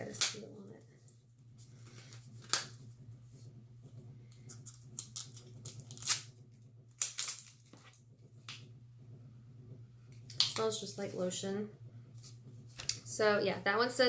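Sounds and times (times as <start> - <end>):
plastic seal tearing and crinkling: 5.0 - 6.3, 6.9 - 8.0.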